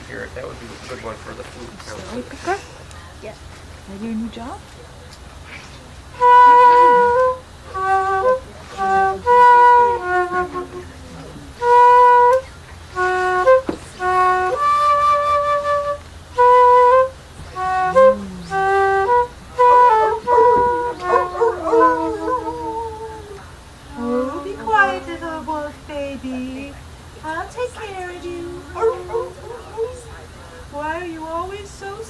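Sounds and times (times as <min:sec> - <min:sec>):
flute playing a melody: 0:05.6 - 0:26.5, 0:27.2 - 0:30.7.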